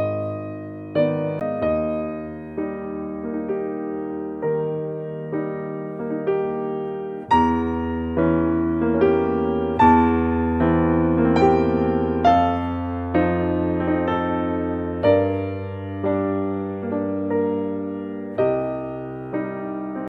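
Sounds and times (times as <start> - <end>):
gentle piano music: 0.0 - 20.0.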